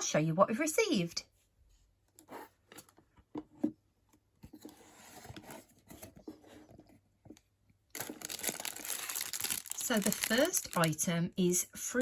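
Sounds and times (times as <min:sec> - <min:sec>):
packaging rustling: 0:07.9 - 0:11.0
paper or plastic crinkling: 0:07.9 - 0:11.0.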